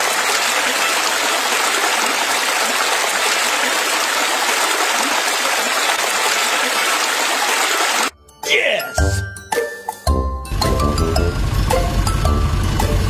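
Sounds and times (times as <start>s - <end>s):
running water: 0.0s - 8.1s.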